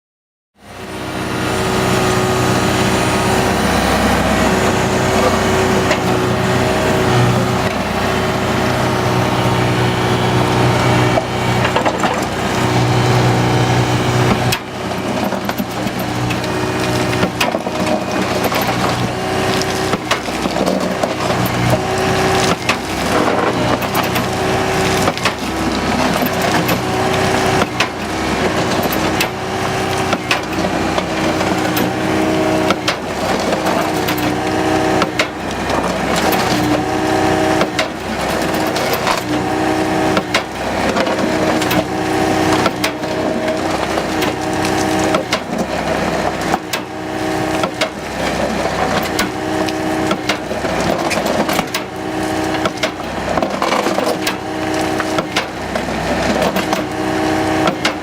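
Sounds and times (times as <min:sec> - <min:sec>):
excavator diesel engine running: 0:00.6 - 0:58.0
concrete cracking and crunching: 0:03.2 - 0:58.0.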